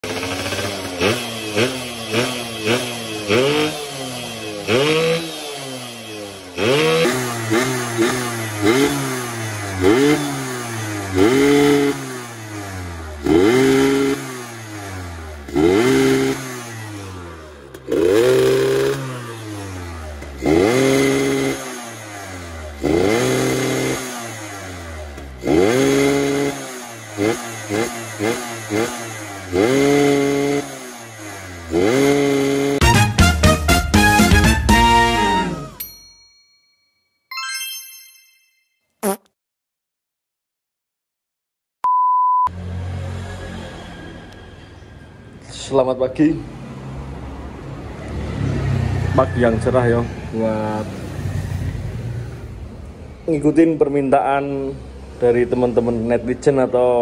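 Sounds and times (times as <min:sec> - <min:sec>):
two-stroke engine revving: 0:00.0 - 0:35.8, 0:46.2 - 0:52.8.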